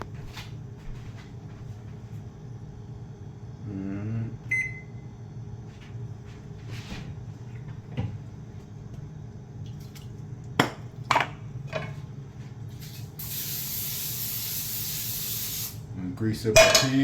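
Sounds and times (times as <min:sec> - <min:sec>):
steady low hum: 0:00.0 - 0:17.0
aerosol cooking spray hissing: 0:12.8 - 0:15.8
kitchenware knocking: 0:16.6 - 0:17.0.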